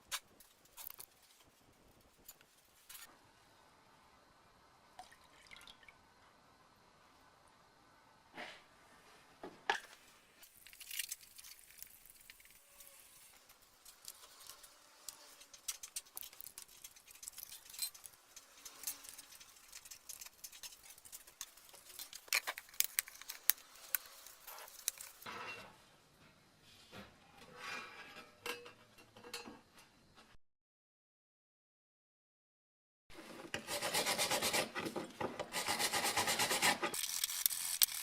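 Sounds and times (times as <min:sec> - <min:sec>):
small metal parts clicking: 0:10.4 - 0:25.3, 0:37.0 - 0:38.0.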